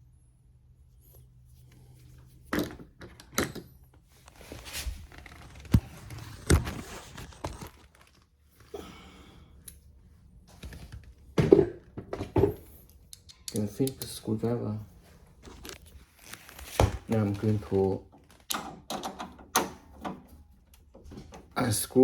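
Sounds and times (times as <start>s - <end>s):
rustling: 4.1s - 8.7s, 14.8s - 18.4s
tool knocks and thuds: 11.4s - 12.7s.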